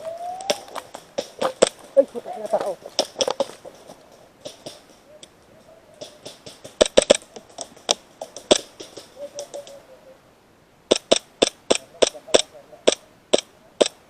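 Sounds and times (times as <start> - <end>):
airsoft pistols firing: 10.9 - 14.0.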